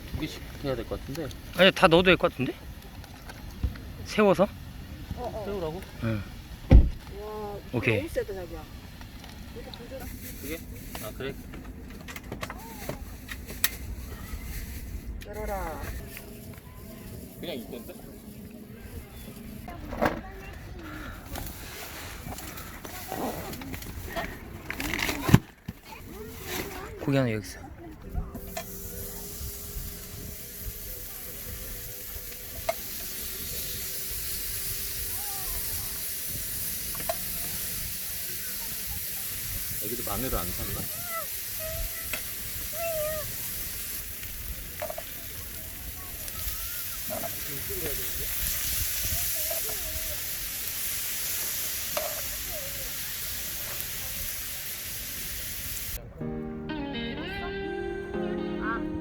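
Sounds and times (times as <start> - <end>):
meat sizzling in a pan: 28.4 - 56.0
music: 56.2 - 59.0.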